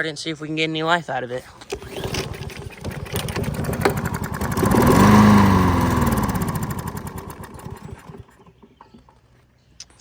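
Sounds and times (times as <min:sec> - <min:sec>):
lawn mower engine cranking and dying: 0:01.3 - 0:09.2.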